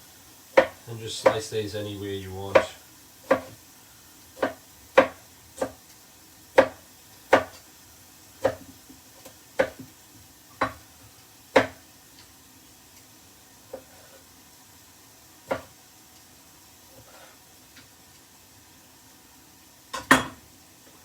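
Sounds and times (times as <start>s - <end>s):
knife slicing tomatoes: 3.3s - 3.6s
knife knocking on chopping board: 11.6s - 11.8s.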